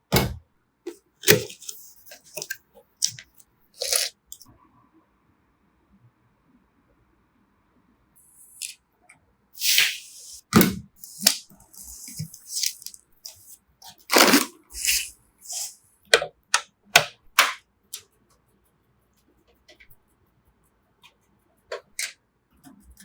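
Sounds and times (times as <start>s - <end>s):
rustling: 9.6s - 15.8s.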